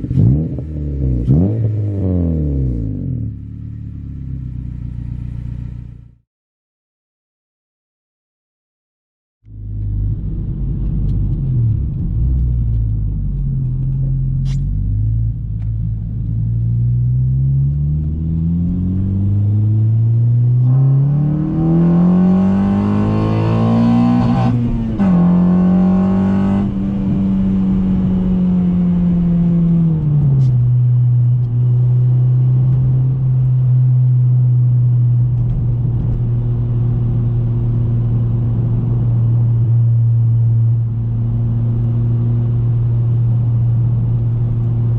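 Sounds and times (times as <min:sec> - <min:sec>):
car engine revving: 0:00.0 - 0:06.1, 0:09.5 - 0:44.9.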